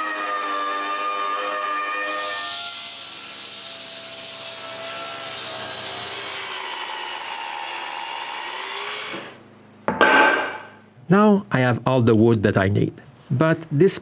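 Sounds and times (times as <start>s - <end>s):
power tool cutting a board: 0.0s - 9.4s.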